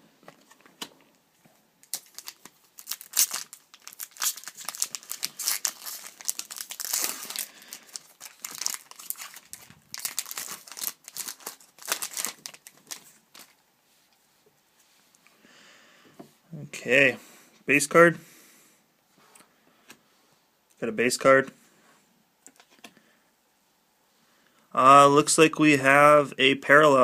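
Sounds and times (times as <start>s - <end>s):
wrapper crinkling and tearing: 1.8s - 13.6s.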